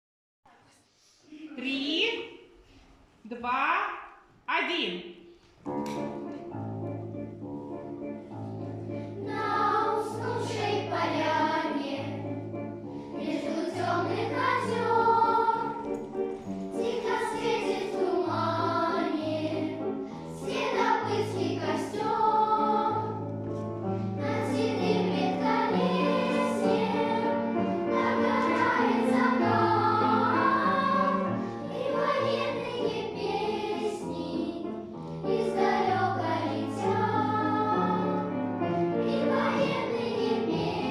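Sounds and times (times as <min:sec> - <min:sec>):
children singing: 0:09.1 - 0:12.3, 0:13.1 - 0:23.3, 0:24.2 - 0:40.9.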